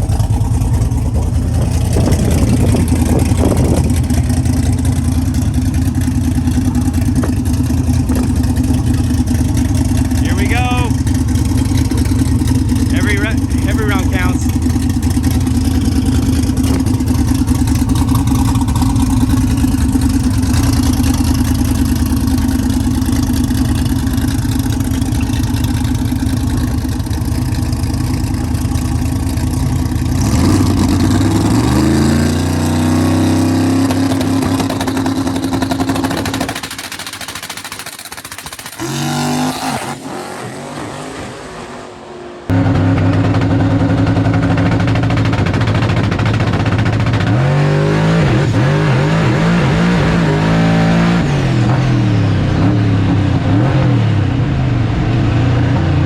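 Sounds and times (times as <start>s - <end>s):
race car engine revving: 0.0s - 56.0s.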